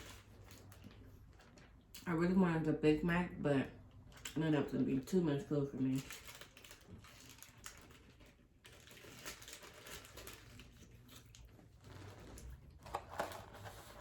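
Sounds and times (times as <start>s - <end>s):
food packaging clicks and rustles: 0.0s - 2.1s, 3.8s - 4.4s, 5.0s - 14.0s
faint chewing: 6.1s - 12.8s.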